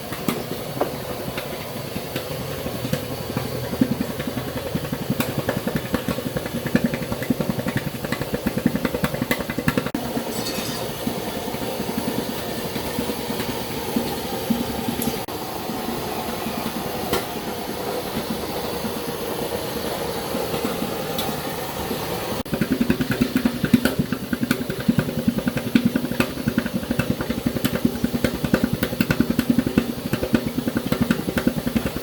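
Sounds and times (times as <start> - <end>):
cooking machine humming: 0.0 - 32.0
machine chugging rhythm: 1.1 - 10.1, 22.4 - 32.0.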